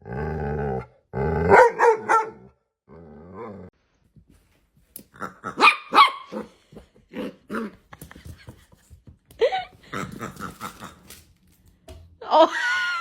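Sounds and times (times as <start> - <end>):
dog barking: 1.5 - 2.5, 5.6 - 6.5.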